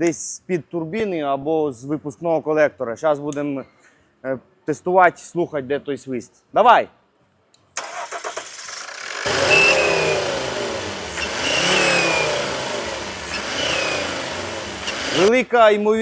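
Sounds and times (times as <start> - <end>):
car engine revving: 7.8 - 15.3.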